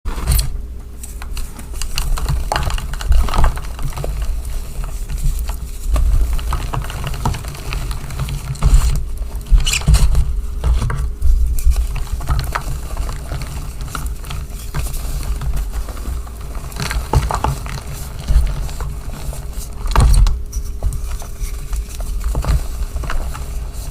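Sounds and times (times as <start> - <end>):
chalk crunching and squeaking: 3.3 - 10.5.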